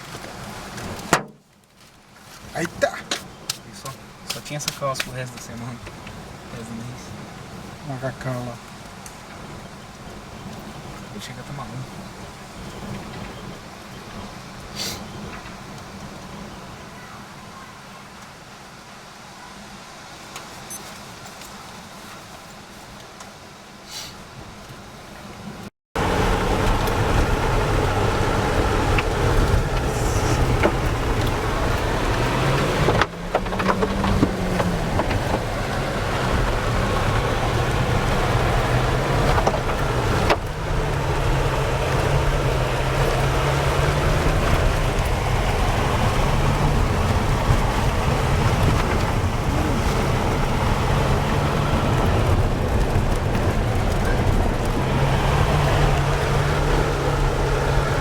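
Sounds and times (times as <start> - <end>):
car engine and road noise: 0.0 - 58.0.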